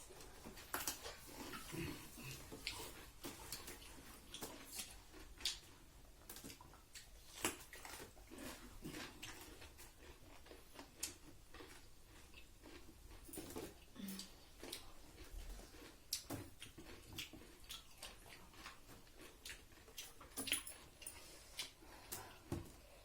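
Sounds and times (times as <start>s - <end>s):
chewing: 0.0s - 23.0s.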